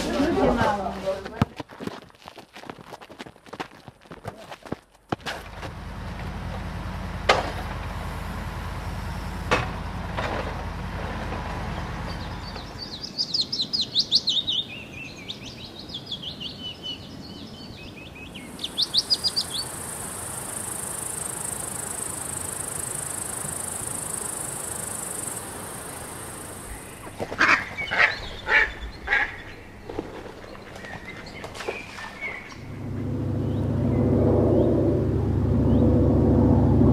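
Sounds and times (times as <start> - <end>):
high chirping bird calls: 11.7 - 19.8, 26.7 - 34.8
steady high hiss: 18.3 - 29.4
low rumble: 32.2 - 36.9.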